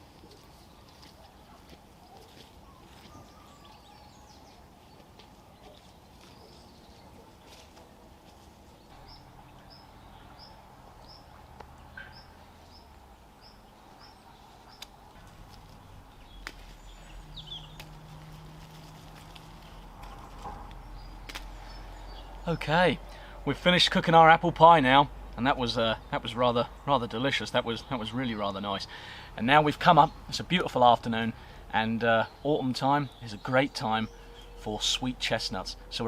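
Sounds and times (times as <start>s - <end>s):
small bird chirping: 8.7s - 22.6s.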